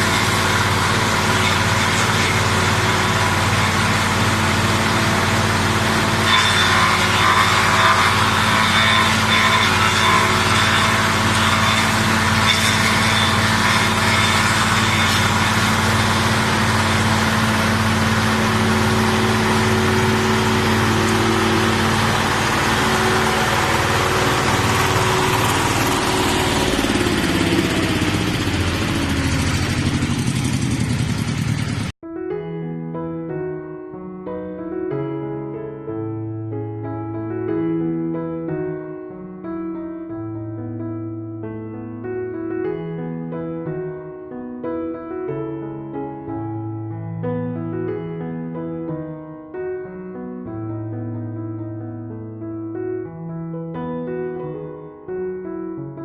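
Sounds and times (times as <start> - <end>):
shredder engine humming: 0.0 - 32.0.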